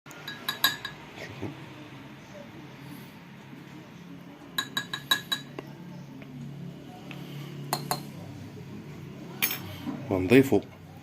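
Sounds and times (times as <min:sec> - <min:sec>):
metal spoon clinking against glass: 0:00.2 - 0:01.0, 0:04.6 - 0:05.6.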